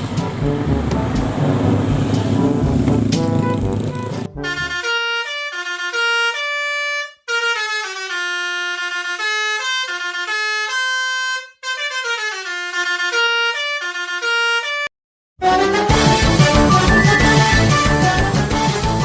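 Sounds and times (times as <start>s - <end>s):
bus air horn melody: 0.0s - 18.8s.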